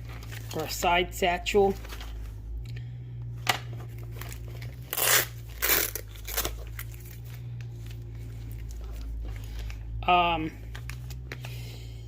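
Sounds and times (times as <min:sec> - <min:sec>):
steady low hum: 0:00.0 - 0:12.0
fabric rustling and crinkling: 0:03.7 - 0:10.0.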